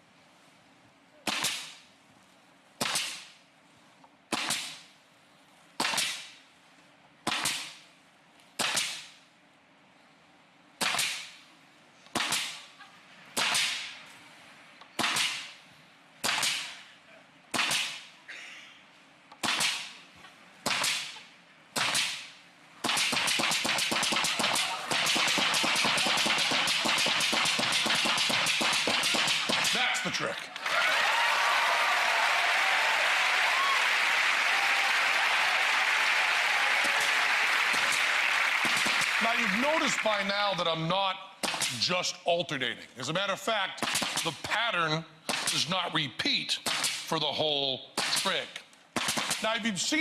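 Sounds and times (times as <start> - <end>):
pneumatic nail gun firing: 2.8 - 3.3, 4.3 - 4.8, 5.8 - 6.3, 10.8 - 11.3, 17.5 - 18.0, 21.8 - 29.8
applause: 24.7 - 27.0, 30.5 - 40.6.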